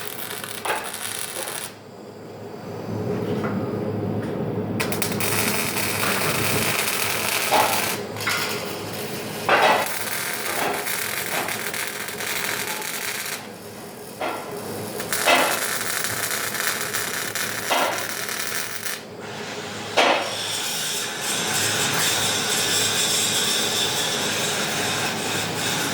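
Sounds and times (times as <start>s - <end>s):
welding arc crackling and hissing: 0.0s - 1.8s, 4.8s - 19.1s.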